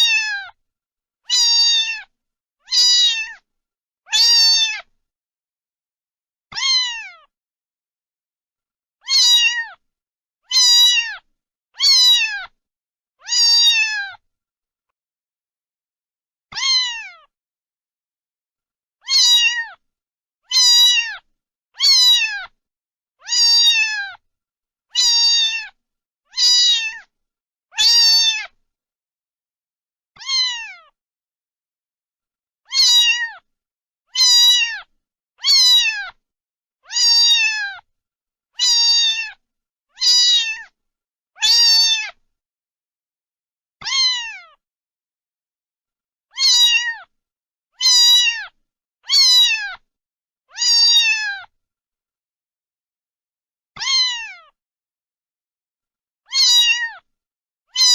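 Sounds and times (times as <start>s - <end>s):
cat meowing: 0.0s - 0.6s, 1.3s - 2.1s, 2.7s - 3.4s, 4.1s - 4.9s, 6.5s - 7.3s, 9.0s - 9.8s, 10.5s - 12.6s, 13.2s - 14.2s, 16.5s - 17.3s, 19.0s - 19.8s, 20.5s - 22.6s, 23.2s - 24.2s, 25.0s - 27.1s, 27.7s - 28.6s, 30.2s - 31.0s, 32.7s - 33.5s, 34.1s - 36.2s, 36.8s - 37.9s, 38.6s - 39.4s, 40.0s - 40.8s, 41.4s - 42.2s, 43.8s - 44.6s, 46.3s - 47.1s, 47.8s - 49.8s, 50.5s - 51.5s, 53.8s - 54.6s, 56.3s - 57.1s.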